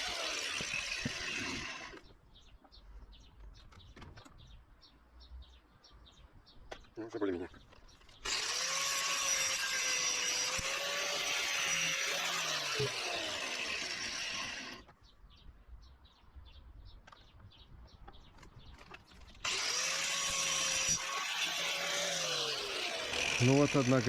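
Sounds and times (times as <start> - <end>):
angle grinder cutting steel: 0.0 - 2.0, 8.2 - 14.8, 19.4 - 24.0.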